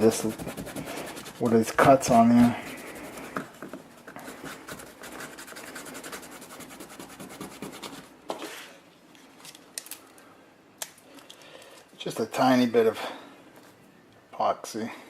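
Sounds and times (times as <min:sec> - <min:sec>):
scratchy rubbing by hand: 0:00.0 - 0:03.4.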